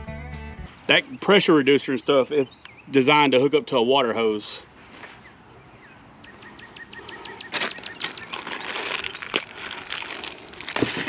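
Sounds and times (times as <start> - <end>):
plastic fittings crackling: 7.6 - 11.0.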